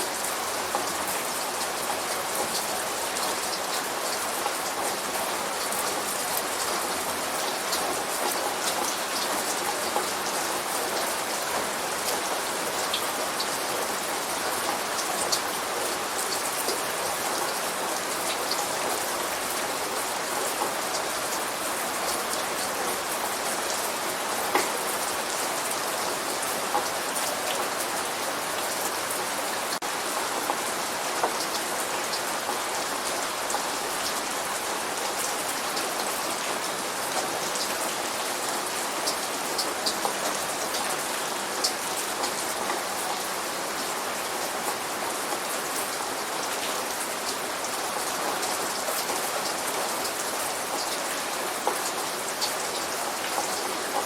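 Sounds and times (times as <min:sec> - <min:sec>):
light rain falling: 0:00.0 - 0:54.0
rain drops ticking on surface: 0:00.0 - 0:54.0.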